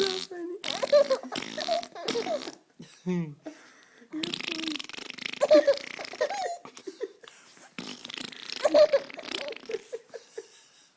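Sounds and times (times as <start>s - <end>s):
baby giggling: 0.0s - 2.6s, 4.2s - 7.3s, 8.4s - 10.6s.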